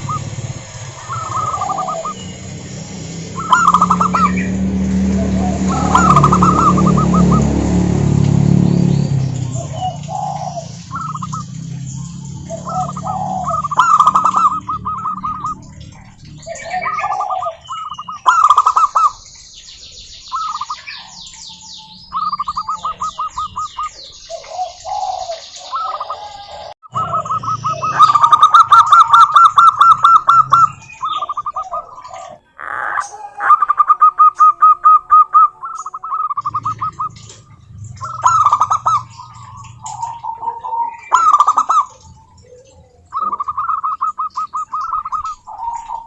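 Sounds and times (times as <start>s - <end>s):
doves cooing: 0.0s - 19.4s, 20.3s - 46.0s
small birds chirping and trilling: 0.0s - 46.0s.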